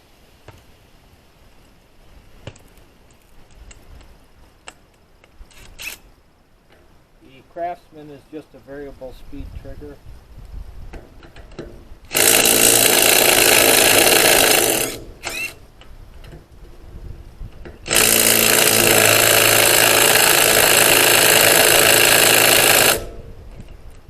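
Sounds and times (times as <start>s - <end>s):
impact driver hammering on lug nut: 12.1s - 15.6s, 17.9s - 23.2s.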